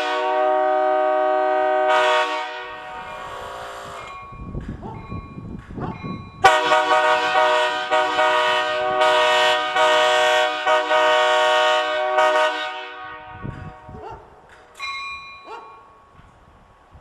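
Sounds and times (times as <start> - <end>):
locomotive air horn chord: 0.0 - 4.1, 6.4 - 13.8.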